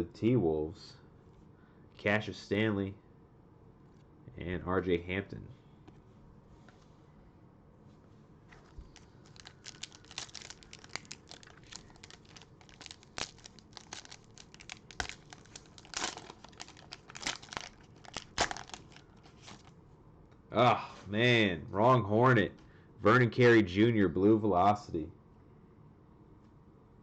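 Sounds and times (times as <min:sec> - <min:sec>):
plastic wrapper crinkling and tearing: 0:08.7 - 0:19.7.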